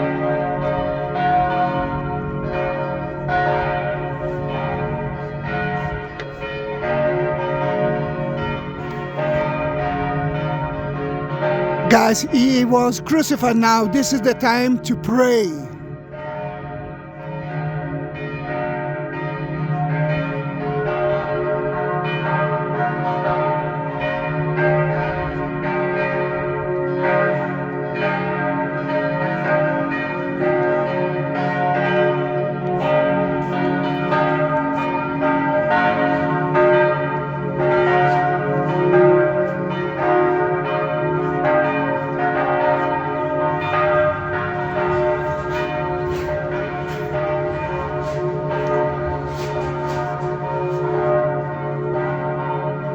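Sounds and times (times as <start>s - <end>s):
church bells ringing: 0.1s - 1.8s, 27.9s - 48.8s, 50.5s - 52.9s.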